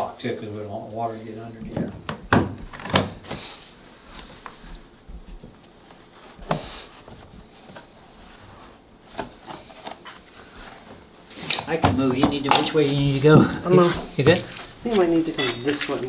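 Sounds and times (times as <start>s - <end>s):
flooring planks knocking and rubbing: 1.6s - 3.6s, 9.1s - 16.0s.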